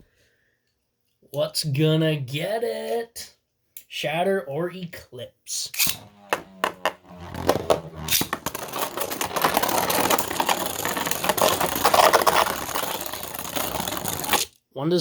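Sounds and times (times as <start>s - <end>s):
spinning tops rattling and scraping: 5.8s - 14.5s
spinning tops clicking: 7.6s - 14.5s.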